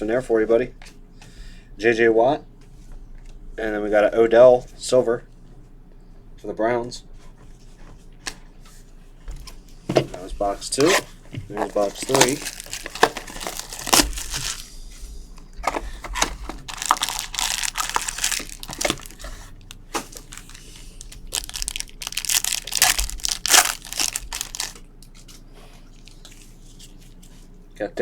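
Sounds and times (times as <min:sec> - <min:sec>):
cardboard handled: 0:09.9 - 0:14.7, 0:15.6 - 0:20.6
plastic wrapping tearing and crinkling: 0:10.7 - 0:14.7, 0:16.2 - 0:24.9.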